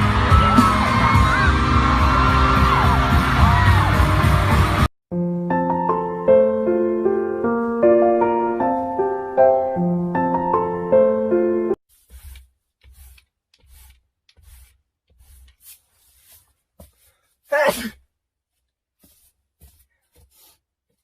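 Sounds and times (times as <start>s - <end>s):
person sneezing: 17.5s - 18.1s.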